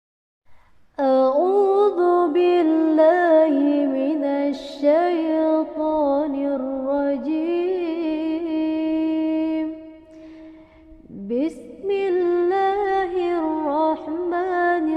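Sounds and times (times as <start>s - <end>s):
person chanting recitation: 11.2s - 14.9s.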